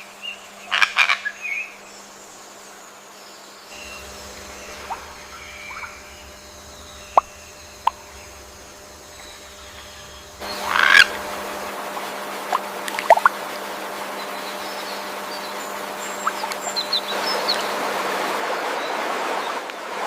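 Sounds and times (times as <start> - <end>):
bird calls: 3.2 - 13.4, 14.0 - 18.0.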